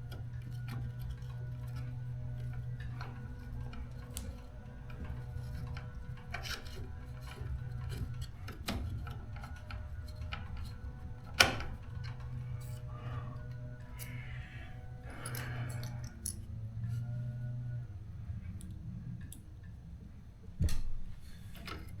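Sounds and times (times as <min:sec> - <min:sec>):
steady low hum: 0:00.0 - 0:22.0
screwdriver and parts clicking: 0:15.2 - 0:16.5.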